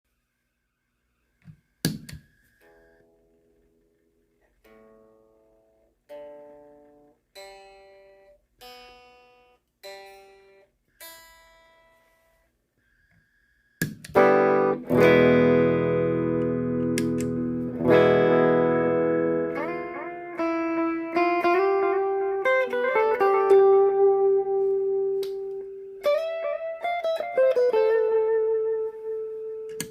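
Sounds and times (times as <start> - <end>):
electric guitar chords ringing: 4.6 - 12.1, 13.8 - 29.9.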